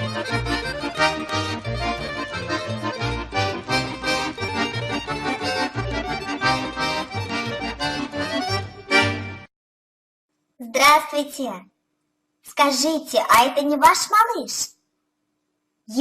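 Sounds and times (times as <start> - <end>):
lively accordion music: 0.0 - 9.5.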